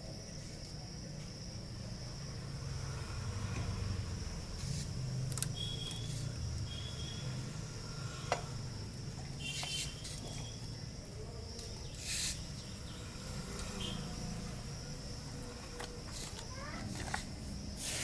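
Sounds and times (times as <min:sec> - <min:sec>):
high-pitched insect chirring: 0:05.5 - 0:07.6.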